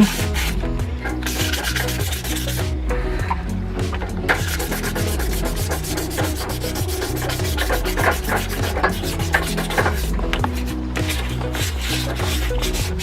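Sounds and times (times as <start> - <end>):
sandpaper rubbing on metal: 1.2 - 2.6, 4.3 - 13.0.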